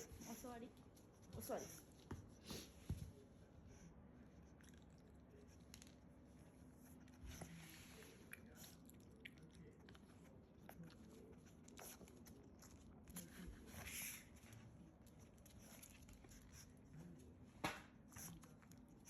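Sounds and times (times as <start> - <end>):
puppy chewing: 4.3 - 17.3.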